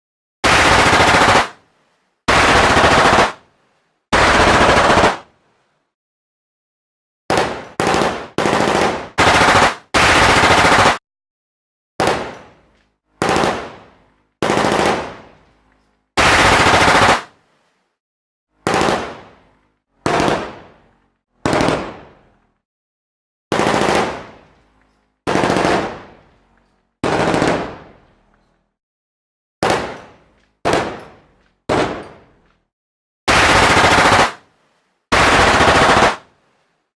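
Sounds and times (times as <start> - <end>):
machine-gun bursts: 0.4 - 1.6, 2.3 - 3.4, 4.2 - 5.2, 7.4 - 11.0, 16.2 - 17.3, 25.3 - 26.0, 33.3 - 34.4, 35.1 - 36.2.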